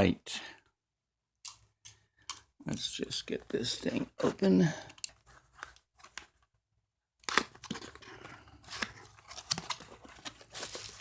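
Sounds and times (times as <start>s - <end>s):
packaging crinkling: 7.2s - 11.0s
packaging tearing: 7.2s - 11.0s.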